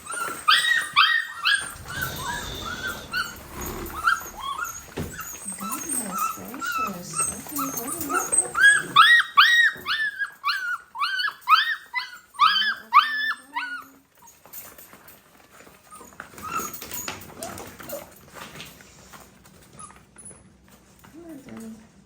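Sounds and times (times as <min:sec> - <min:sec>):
puppies whining and yipping: 0:00.0 - 0:18.5, 0:19.5 - 0:20.6
faint rustling: 0:00.9 - 0:08.6.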